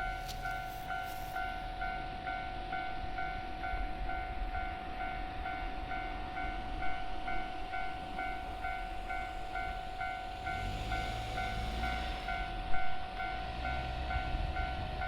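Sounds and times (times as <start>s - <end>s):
level-crossing warning bell: 0.0s - 15.0s.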